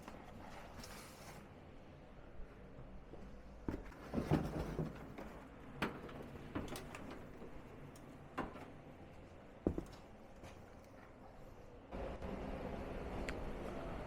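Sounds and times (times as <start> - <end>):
handling knocks and rustle: 9.6 - 11.2.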